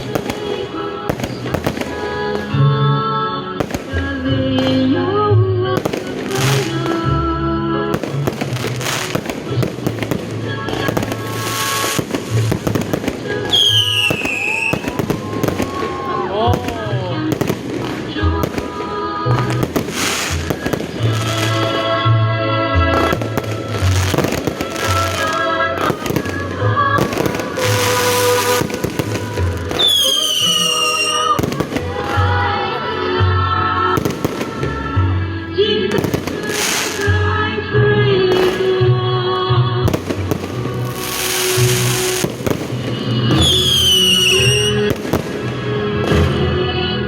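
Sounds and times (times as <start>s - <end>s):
fireworks crackling and popping: 0.0s - 2.7s, 3.6s - 5.0s, 5.8s - 7.3s, 7.9s - 22.0s, 22.8s - 32.8s, 34.0s - 35.1s, 35.9s - 37.4s, 38.3s - 38.9s, 39.8s - 46.5s
music with held notes: 0.0s - 29.9s, 31.3s - 47.0s
fireworks hissing bursts: 5.8s - 7.2s, 8.0s - 21.9s, 23.0s - 32.6s, 35.9s - 37.3s, 39.9s - 45.7s
high falling whistle: 13.5s - 15.0s, 29.8s - 31.4s.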